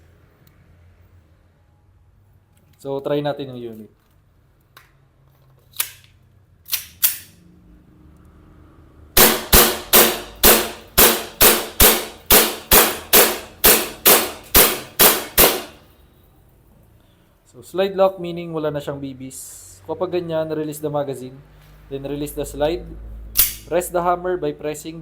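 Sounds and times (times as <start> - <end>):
airsoft pistol shots: 9.2 - 15.8.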